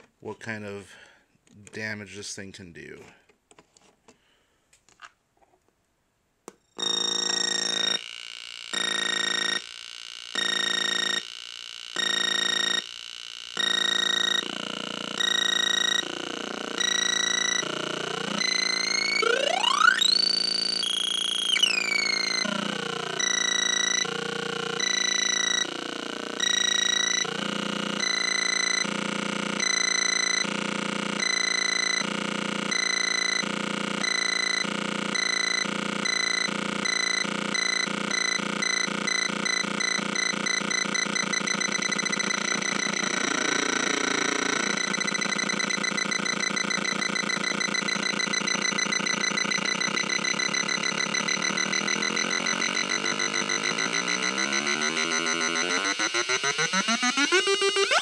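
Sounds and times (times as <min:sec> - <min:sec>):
electronic bleeps and buzzes: 0:06.8 - 0:58.0.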